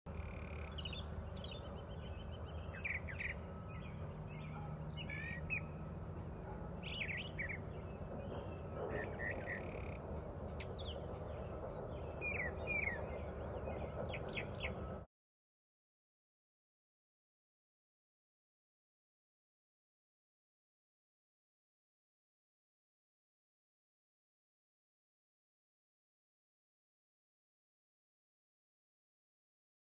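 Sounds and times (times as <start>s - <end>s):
small birds chirping: 0.1s - 5.8s, 6.8s - 15.0s.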